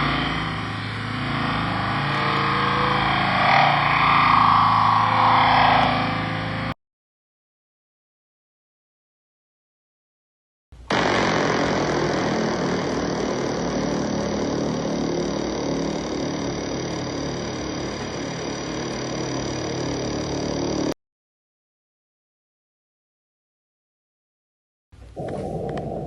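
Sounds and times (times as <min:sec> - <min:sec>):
dense drone with held tones: 0:00.0 - 0:06.8, 0:10.8 - 0:21.0.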